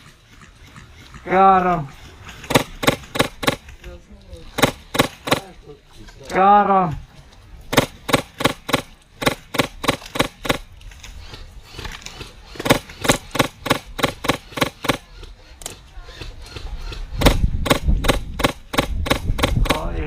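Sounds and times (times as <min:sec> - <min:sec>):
airsoft rifle shots: 0:02.4 - 0:03.7, 0:04.5 - 0:05.6, 0:07.7 - 0:10.7, 0:12.5 - 0:15.3, 0:16.1 - 0:20.0
wind rumble on microphone: 0:16.0 - 0:20.0.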